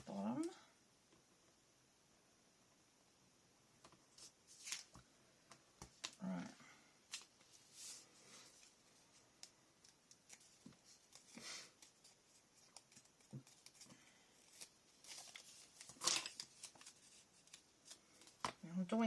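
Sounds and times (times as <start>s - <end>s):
paper rustling: 4.1s - 5.1s, 7.1s - 18.6s.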